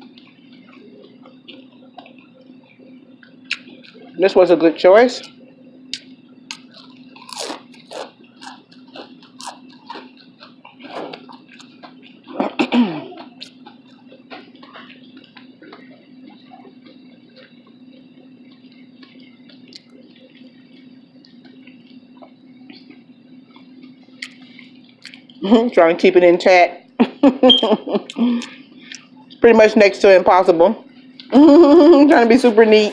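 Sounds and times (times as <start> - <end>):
wet chewing and lip smacks: 0.0 - 4.2, 5.2 - 25.4, 28.1 - 29.4
steady low hum: 0.0 - 32.9.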